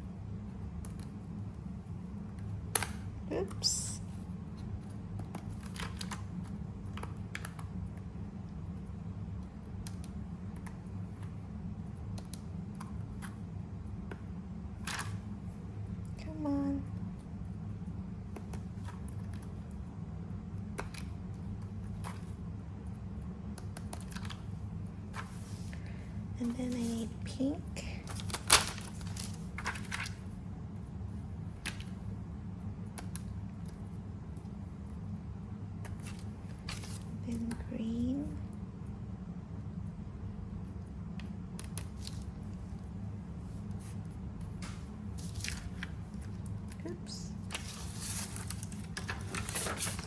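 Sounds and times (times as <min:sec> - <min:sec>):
steady low hum: 0:00.0 - 0:50.0
paper stickers rustling: 0:27.9 - 0:30.3, 0:43.7 - 0:46.5, 0:47.4 - 0:50.0.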